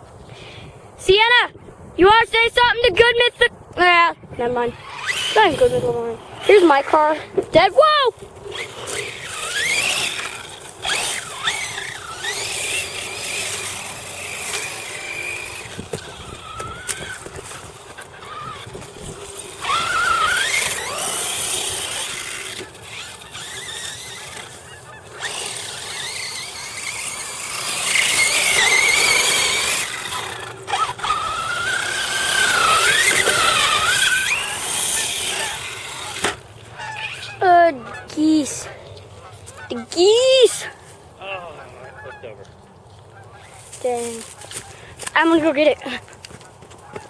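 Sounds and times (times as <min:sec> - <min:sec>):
rc car motor whining: 0:04.4 - 0:38.7.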